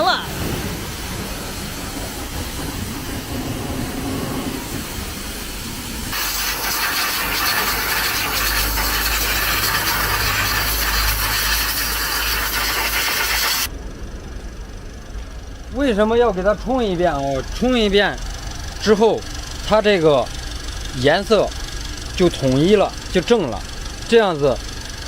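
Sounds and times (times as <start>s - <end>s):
pressure washer spraying: 0.0s - 13.7s.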